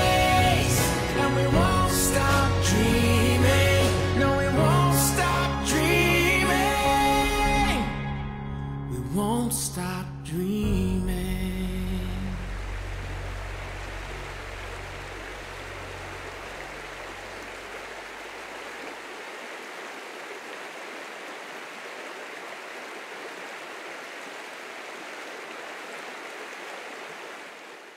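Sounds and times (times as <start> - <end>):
low music tones: 0.0 - 17.7
waterfall rushing: 11.9 - 27.9.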